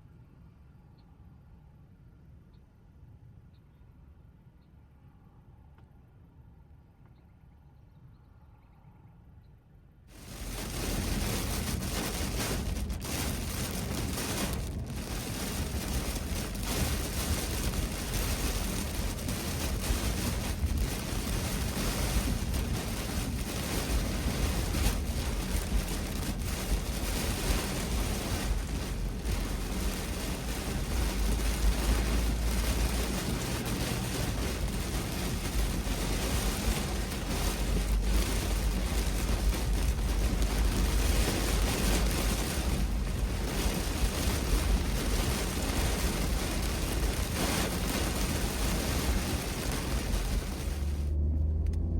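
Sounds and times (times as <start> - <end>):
wind buffeting microphone: 10.1 - 51.0.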